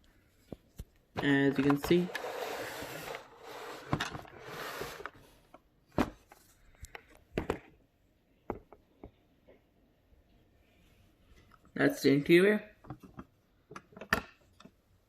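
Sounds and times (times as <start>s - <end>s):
toy car rustle: 1.5s - 5.2s.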